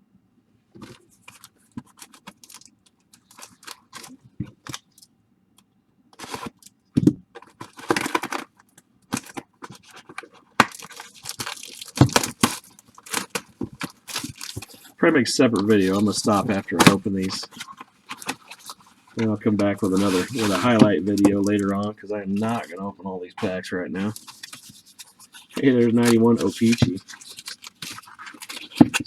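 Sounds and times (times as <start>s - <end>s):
wrappers tearing and crinkling: 0.8s - 4.9s, 6.2s - 6.7s, 7.4s - 22.8s, 24.0s - 29.0s
cards being handled: 9.1s - 29.0s.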